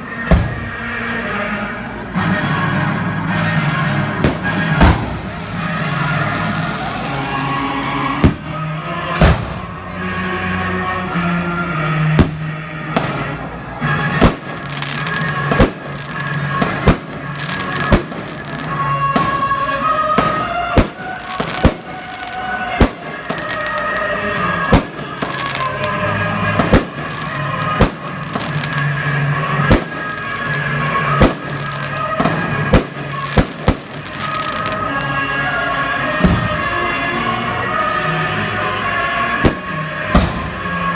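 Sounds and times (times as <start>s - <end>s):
music: 0.0s - 40.9s
fireworks banging: 0.2s - 1.1s, 4.0s - 9.9s, 12.1s - 35.2s, 36.2s - 36.8s, 39.3s - 40.9s.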